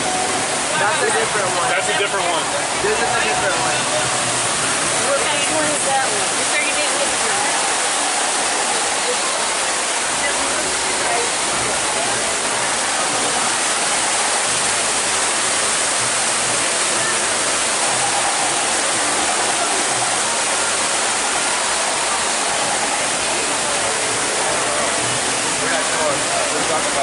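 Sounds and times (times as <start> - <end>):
faint voices: 0.0 - 27.0
rushing water: 0.0 - 27.0.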